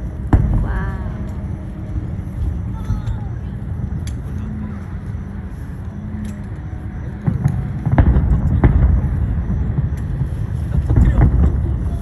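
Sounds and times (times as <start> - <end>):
fireworks booming: 0.0 - 3.8, 7.2 - 12.0
sharp fireworks cracks: 0.0 - 4.4, 6.3 - 12.0
low rumble: 0.0 - 12.0.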